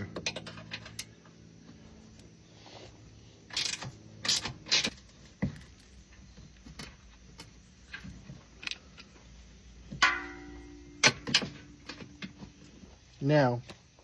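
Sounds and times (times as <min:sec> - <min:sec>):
metallic rattles of hand tools: 0:00.0 - 0:01.3, 0:03.4 - 0:06.0.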